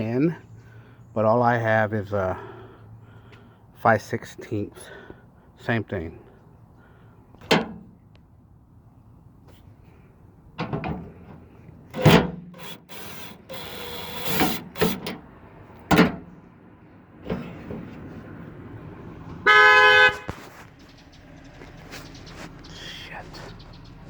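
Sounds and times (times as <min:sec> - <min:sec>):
two-tone car horn honk: 0:19.4 - 0:20.3
scrape: 0:20.3 - 0:20.7.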